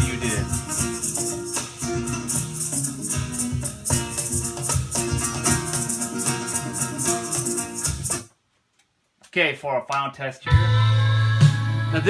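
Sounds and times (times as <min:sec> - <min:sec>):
latin music through speakers: 0:00.0 - 0:08.3, 0:10.5 - 0:12.0
plucked strings: 0:00.0 - 0:08.3
rhythmic shaker: 0:00.0 - 0:08.3.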